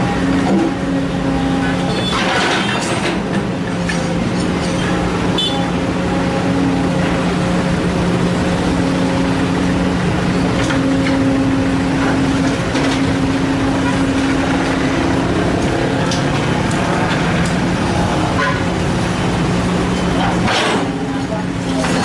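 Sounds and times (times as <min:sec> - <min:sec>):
diesel engines humming under load: 0:00.0 - 0:22.0
higher engine tone: 0:04.7 - 0:22.0.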